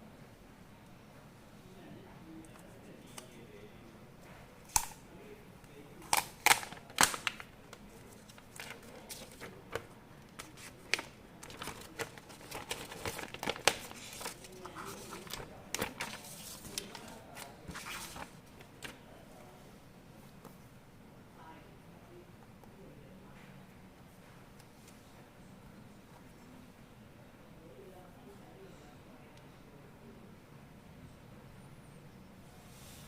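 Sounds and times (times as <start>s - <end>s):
packaging crinkling and rustling: 6.1s - 19.0s.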